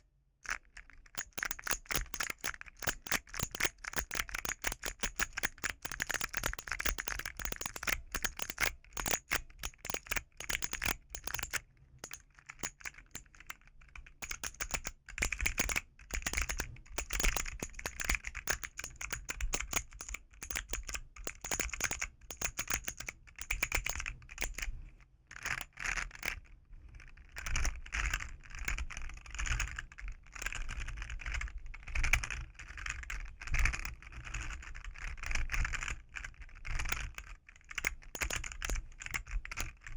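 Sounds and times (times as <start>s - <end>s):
fidget toy keys clacking: 0.5s - 13.6s, 14.2s - 24.7s, 36.8s - 39.9s.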